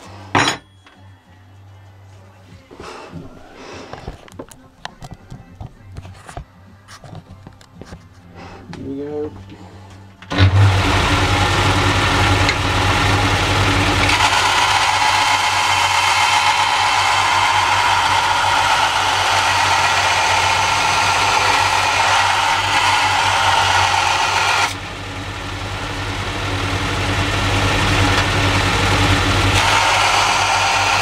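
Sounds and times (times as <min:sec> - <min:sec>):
electric power tool running: 0:10.3 - 0:31.0.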